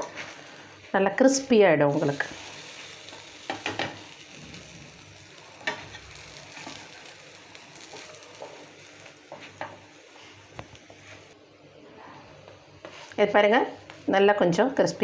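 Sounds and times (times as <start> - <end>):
food sizzling in oil: 0.0 - 11.4, 12.4 - 15.0.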